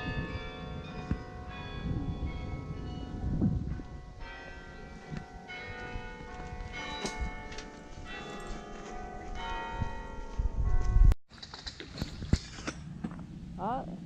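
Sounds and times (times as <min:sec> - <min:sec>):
carillon bells playing a tune: 0:00.0 - 0:10.8.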